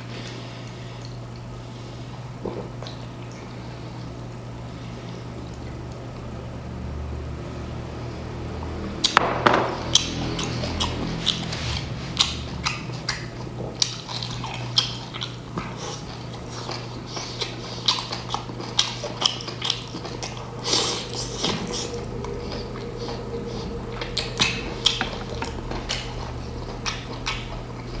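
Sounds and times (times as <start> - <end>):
steady low hum: 0.0 - 28.0
wet chewing smacks and clicks: 9.8 - 28.0.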